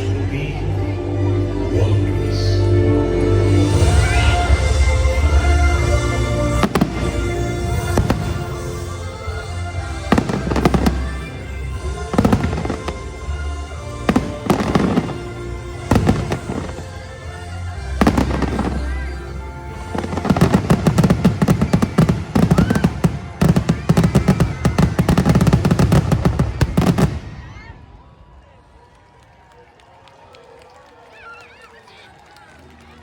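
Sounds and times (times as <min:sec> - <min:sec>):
orchestral music: 0:00.0 - 0:27.6
fireworks bursting: 0:03.7 - 0:28.0.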